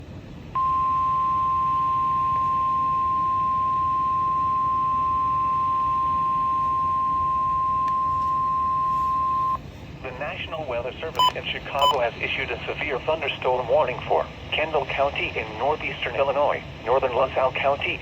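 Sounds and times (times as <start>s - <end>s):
loud steady warning beep: 0.5s - 9.6s, 11.2s - 12.1s
faint radio hiss: 2.0s - 18.0s.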